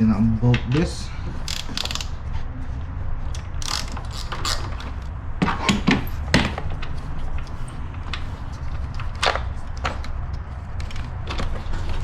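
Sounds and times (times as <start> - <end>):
wrench clicking and knocking: 1.4 - 2.2, 3.6 - 5.0.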